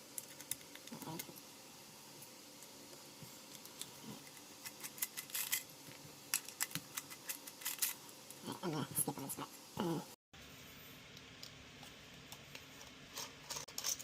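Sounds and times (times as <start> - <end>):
small metal parts clinking: 4.6 - 5.7, 6.3 - 8.0, 13.1 - 14.0.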